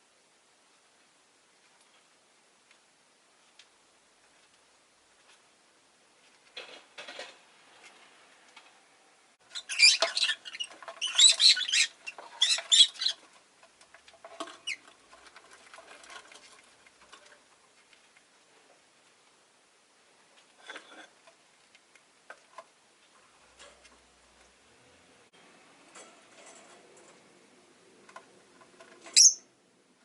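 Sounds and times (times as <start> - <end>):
lovebird chirping and chattering: 9.5 - 13.2, 29.1 - 29.5.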